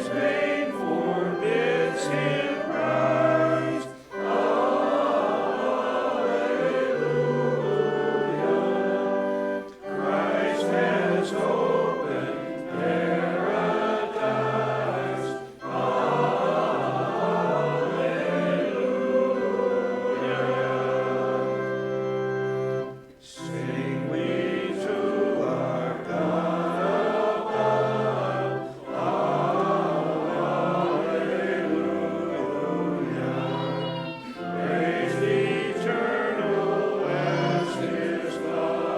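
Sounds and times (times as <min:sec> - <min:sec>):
choir singing a hymn: 0:00.0 - 0:38.9.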